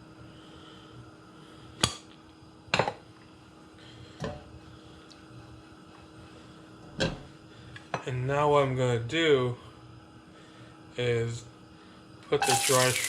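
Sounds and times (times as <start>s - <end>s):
steady low hum: 0.0s - 12.4s
kitchenware clinking: 12.4s - 13.0s.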